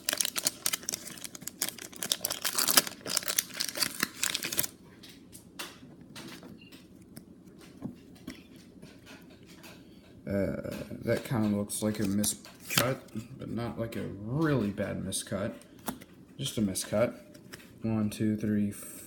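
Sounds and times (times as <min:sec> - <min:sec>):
foil wrapper tearing and crinkling: 0:00.0 - 0:04.8.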